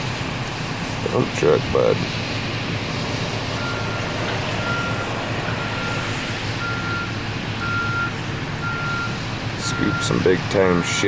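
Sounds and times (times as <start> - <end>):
diesel engine rumble: 0.0 - 11.0
reversing alarm beeping: 3.6 - 11.0.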